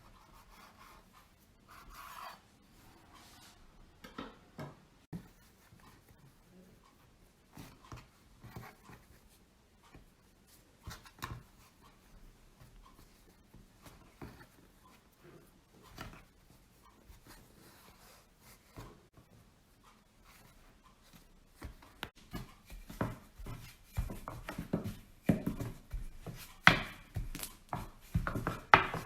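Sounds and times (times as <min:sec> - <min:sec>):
rubbing sounds: 0:20.2 - 0:29.0.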